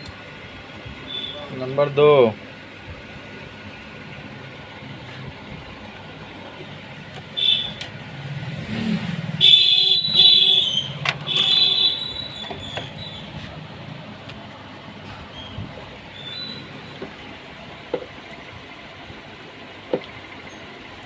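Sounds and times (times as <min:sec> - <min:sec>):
road traffic: 0:00.0 - 0:21.0
vehicle horn honking: 0:01.1 - 0:01.5, 0:07.4 - 0:07.8, 0:09.4 - 0:12.3.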